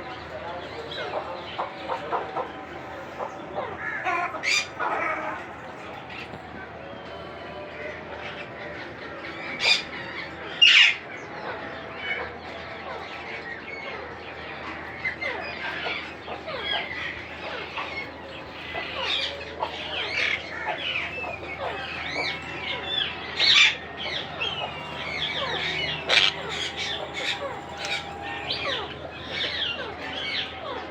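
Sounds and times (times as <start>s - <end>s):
parakeets chattering: 0.0s - 7.6s, 8.2s - 30.9s
harsh parrot squawks: 24.4s - 28.9s.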